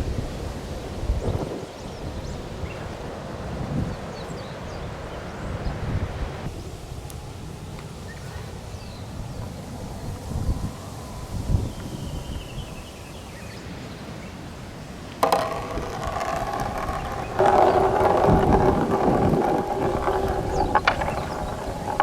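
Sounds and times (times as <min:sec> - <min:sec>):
marbles rolling on track: 0:15.2 - 0:22.0.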